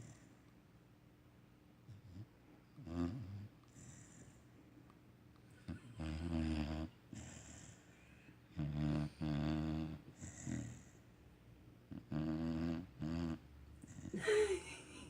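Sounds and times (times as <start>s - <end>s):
puppy snoring: 0.0s - 0.3s, 1.9s - 4.4s, 5.6s - 11.1s, 11.9s - 14.3s.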